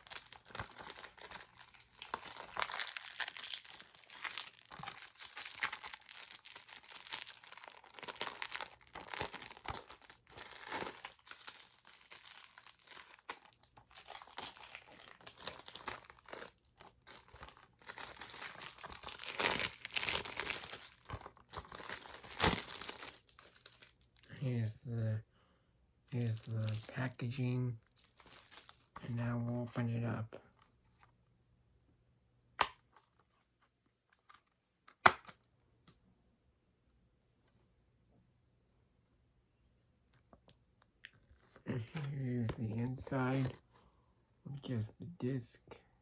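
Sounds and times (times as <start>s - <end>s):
plastic wrap crinkling: 0.0s - 24.3s, 26.2s - 29.3s, 41.8s - 43.6s.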